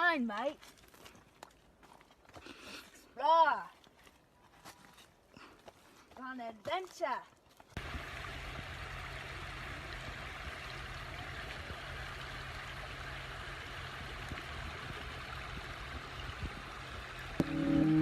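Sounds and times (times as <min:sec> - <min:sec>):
stream flowing: 0:07.8 - 0:18.0.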